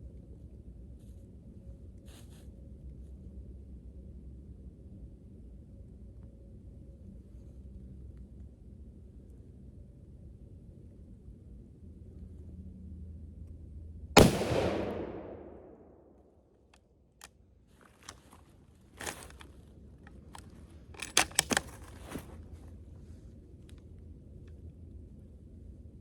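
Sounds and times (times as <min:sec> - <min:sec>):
rifle shot: 0:14.2 - 0:16.1.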